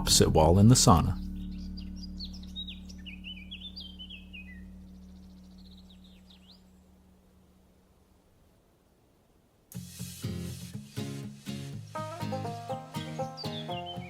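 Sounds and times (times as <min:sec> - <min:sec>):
small birds chirping: 0:00.0 - 0:08.2, 0:09.8 - 0:14.0
steady low hum: 0:00.0 - 0:08.5.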